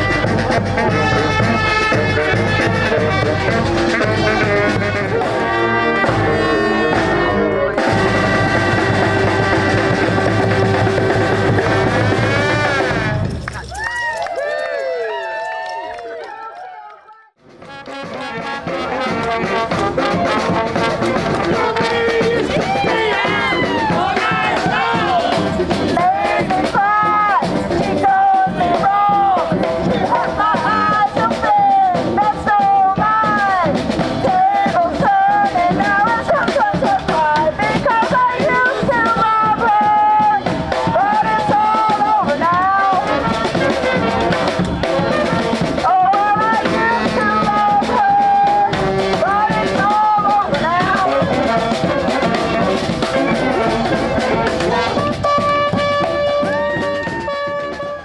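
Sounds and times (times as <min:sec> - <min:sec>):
brass band horns: 0:00.0 - 0:13.6, 0:17.4 - 0:58.0
steady drum beat: 0:00.0 - 0:13.8, 0:17.4 - 0:58.0.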